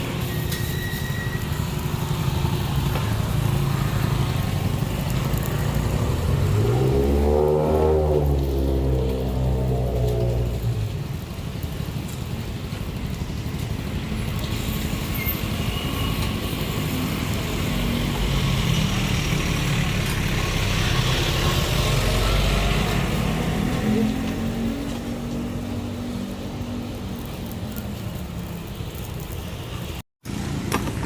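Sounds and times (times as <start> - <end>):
vehicle passing by: 1.8 - 11.8, 16.3 - 30.0.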